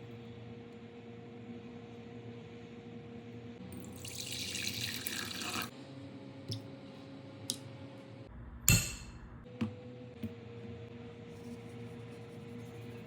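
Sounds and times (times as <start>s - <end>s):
water running from tap: 3.8s - 5.7s.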